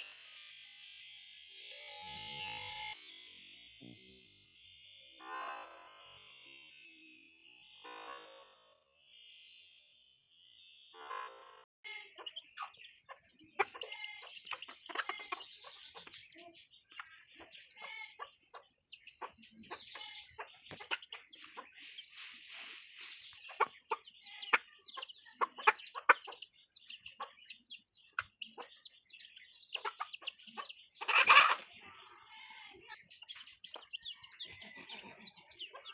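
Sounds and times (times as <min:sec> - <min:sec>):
chickens clucking and chirping: 0:11.9 - 0:35.9
beaks tapping on feed: 0:12.2 - 0:31.7.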